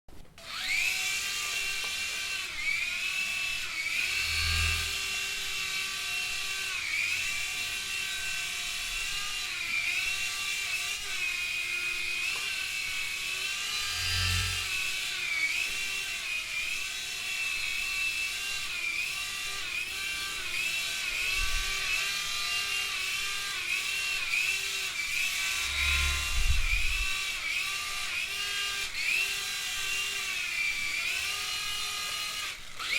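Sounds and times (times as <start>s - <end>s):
toy helicopter motor whining: 0.4s - 32.9s.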